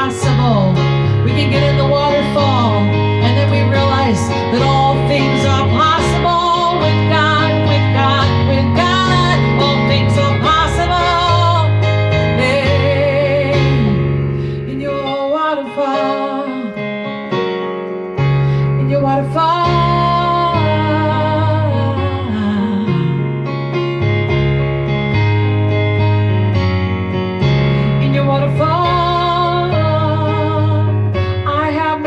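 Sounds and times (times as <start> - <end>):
held bass notes: 0.0 - 15.0, 18.9 - 31.9
woman singing with vibrato: 0.0 - 16.8, 18.8 - 23.2, 28.0 - 32.0
keyboard accompaniment: 0.0 - 32.0.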